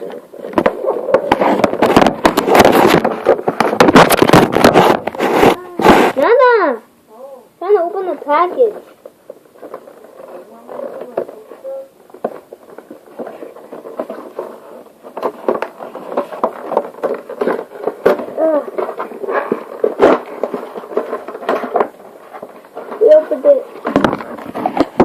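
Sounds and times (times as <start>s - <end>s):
packaging snapping and popping: 0.0s - 6.1s, 12.1s - 23.2s.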